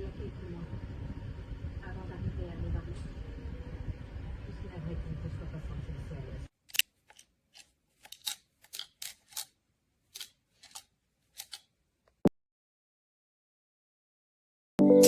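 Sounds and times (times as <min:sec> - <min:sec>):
irregular clicks and snips: 0:06.6 - 0:12.2.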